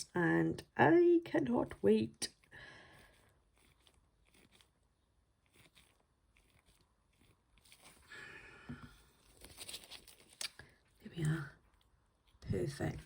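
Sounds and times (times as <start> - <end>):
soft handling rustles: 2.4 - 8.1, 8.8 - 13.0.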